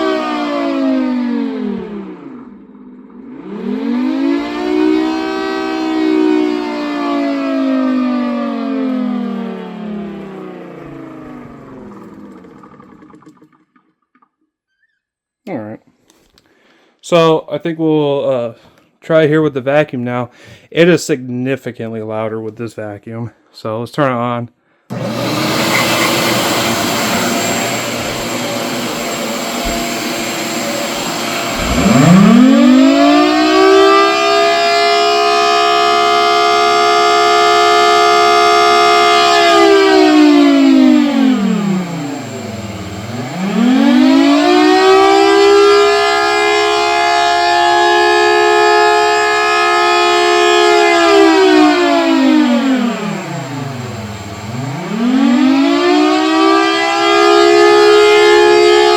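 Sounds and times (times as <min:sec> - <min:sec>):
siren wailing: 0:00.0 - 0:12.9, 0:25.0 - 0:58.9
steady air rushing: 0:31.0 - 0:33.0.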